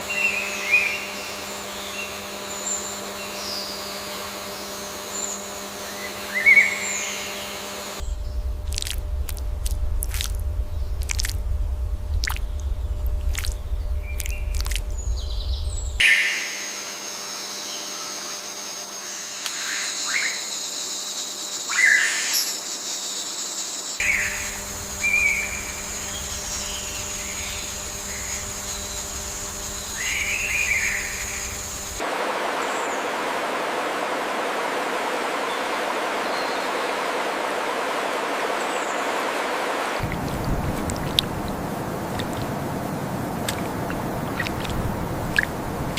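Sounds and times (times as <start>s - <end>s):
steady low hum: 0.0s - 16.0s, 24.0s - 36.2s, 36.9s - 45.9s
low rumble: 8.0s - 16.0s, 24.0s - 32.0s, 40.0s - 45.9s
songbirds chirping: 10.1s - 16.0s, 23.6s - 33.4s, 35.1s - 45.9s.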